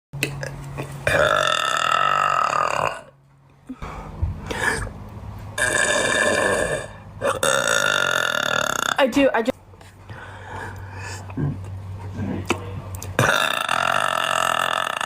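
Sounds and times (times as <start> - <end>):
girl burping loudly: 0.4 - 3.2, 5.6 - 9.1, 13.2 - 15.0.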